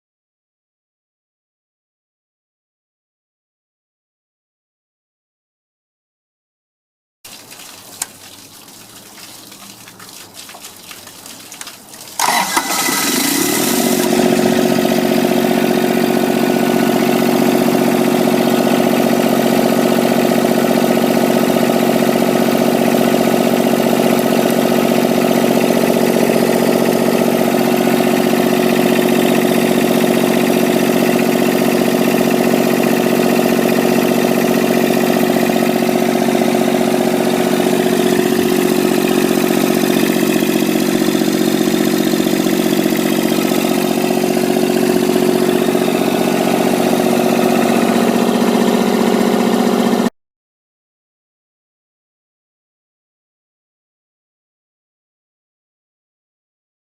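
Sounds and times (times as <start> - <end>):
diesel generator engine running: 11.1 - 50.1.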